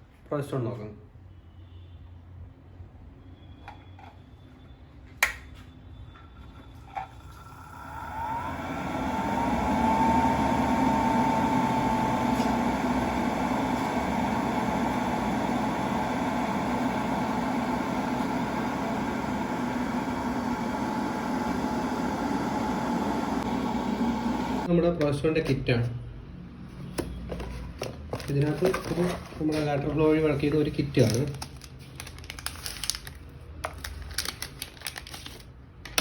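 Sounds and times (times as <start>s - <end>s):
centrifuge whine: 6.4s - 24.7s.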